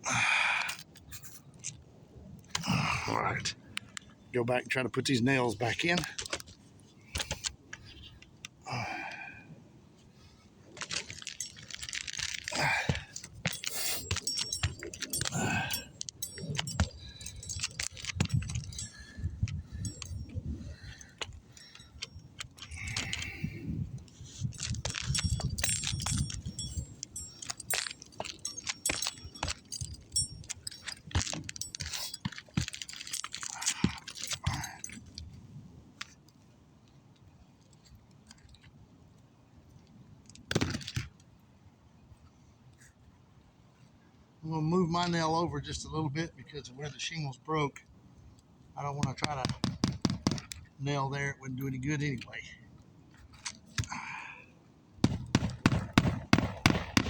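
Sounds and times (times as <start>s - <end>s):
nails jingling and clinking: 3.3s - 8.5s, 10.7s - 35.4s, 48.8s - 54.3s, 55.0s - 57.0s.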